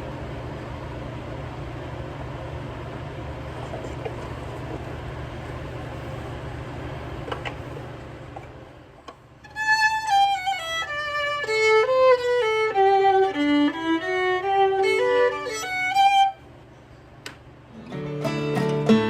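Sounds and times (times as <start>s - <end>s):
steady background noise: 0.0s - 19.0s
violin melody: 9.4s - 16.5s.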